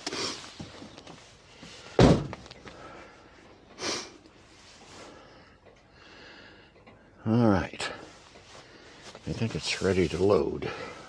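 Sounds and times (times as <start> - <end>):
breathy sniff: 0.0 - 0.6, 3.8 - 6.7.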